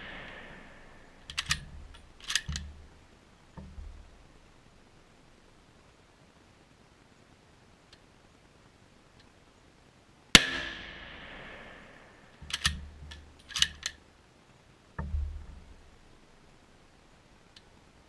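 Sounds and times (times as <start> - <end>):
rifle bolt clacking: 0.0 - 2.9, 12.3 - 14.0
rifle shot echoing: 0.0 - 3.0, 10.4 - 13.9.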